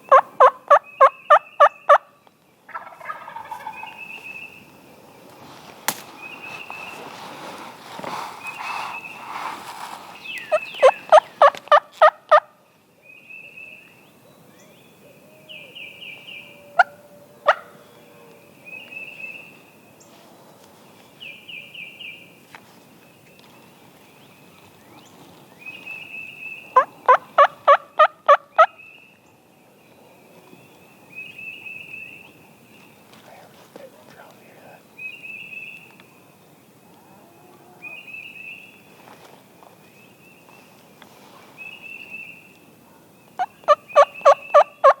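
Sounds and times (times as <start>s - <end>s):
turkey gobbling: 0.1s - 2.0s, 2.7s - 3.9s, 26.8s - 28.7s, 43.4s - 45.0s.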